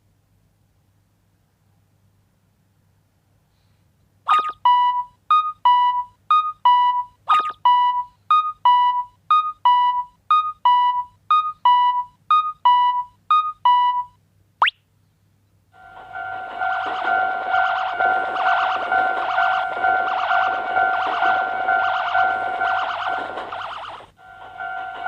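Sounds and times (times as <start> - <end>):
synthesized crossing alarm dinging: 4.3 - 14.1, 15.8 - 25.0.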